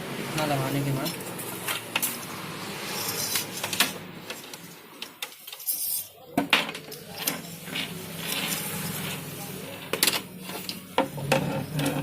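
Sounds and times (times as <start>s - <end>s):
printer parts clicking and knocking: 6.3s - 7.4s, 9.8s - 12.0s.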